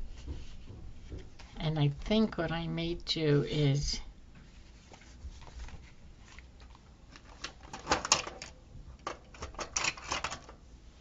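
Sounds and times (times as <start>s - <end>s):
paper crinkling: 4.6s - 8.1s.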